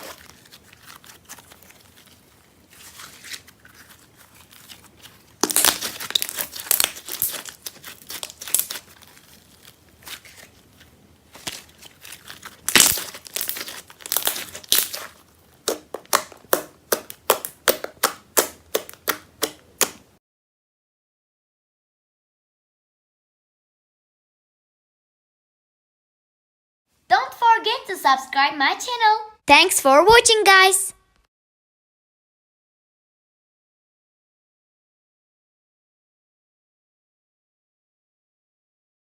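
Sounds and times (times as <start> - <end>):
slime squished with sticky crackling: 0.0 - 20.1.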